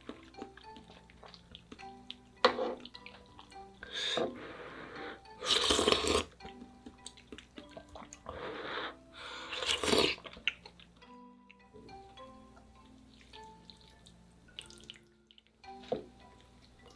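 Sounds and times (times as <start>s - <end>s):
quiet chewing: 0.0s - 4.3s, 5.4s - 8.4s, 9.5s - 16.9s
noodles being slurped: 3.9s - 10.5s.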